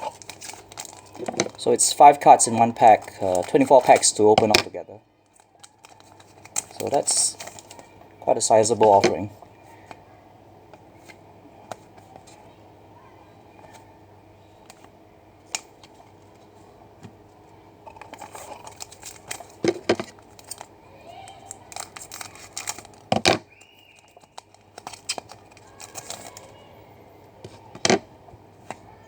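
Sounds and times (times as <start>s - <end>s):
wrappers crinkling and rustling: 0.0s - 4.2s, 5.3s - 8.0s, 17.9s - 26.7s
card wrappers tearing: 0.0s - 4.6s, 5.3s - 7.9s, 17.9s - 26.6s.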